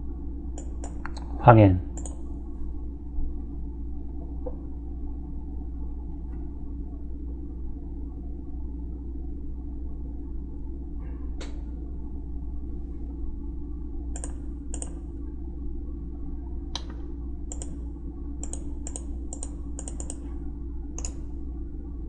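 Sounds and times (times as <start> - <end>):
steady low hum: 0.0 - 22.0
computer keyboard keystrokes: 0.6 - 1.3, 1.9 - 2.2, 14.2 - 15.0, 16.8 - 17.8, 18.4 - 20.3, 21.0 - 21.2.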